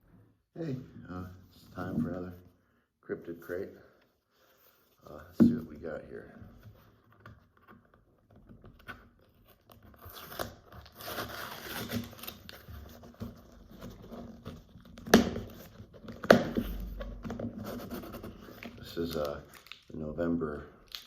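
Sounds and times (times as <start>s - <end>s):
tape and cardboard tearing: 8.8s - 19.9s.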